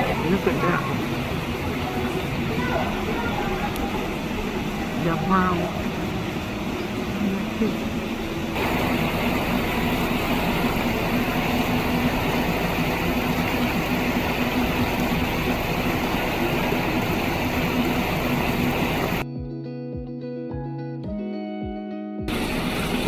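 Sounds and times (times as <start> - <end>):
loud steady rushing noise: 0.0 - 19.2, 22.3 - 23.0
low hum: 0.0 - 19.2, 22.3 - 23.0
plucked guitar music: 19.2 - 22.4.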